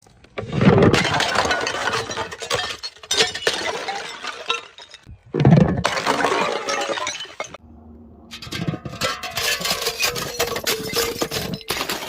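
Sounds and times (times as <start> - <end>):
glass bottles smashing: 0.8 - 7.6, 9.0 - 12.0
glass shards tinkling: 9.3 - 12.0.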